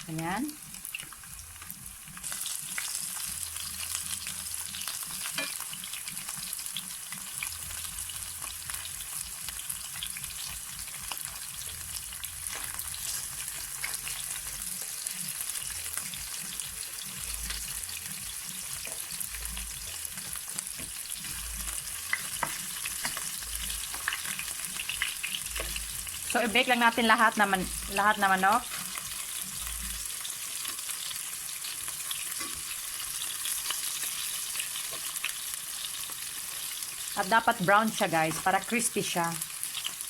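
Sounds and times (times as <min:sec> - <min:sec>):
chicken sizzling in hot oil: 0:00.0 - 0:40.0.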